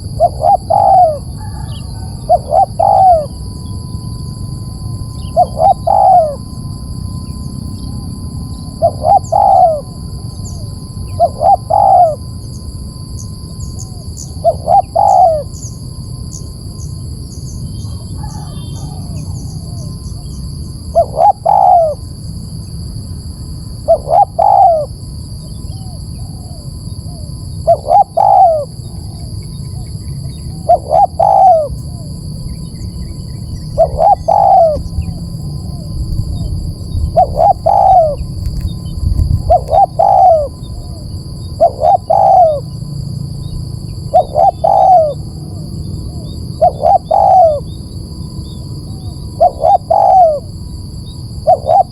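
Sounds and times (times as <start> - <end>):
dove cooing: 0.0 - 15.7, 17.7 - 22.5, 23.6 - 51.9
steady low rumble: 31.6 - 46.7.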